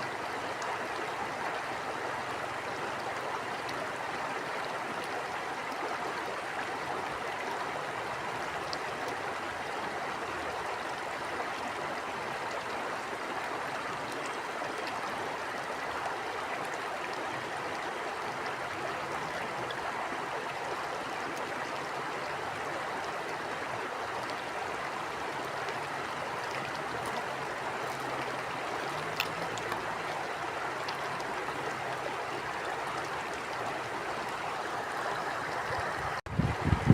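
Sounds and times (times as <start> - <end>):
stream flowing over rocks: 0.0 - 36.9
faint splashes: 24.1 - 34.2.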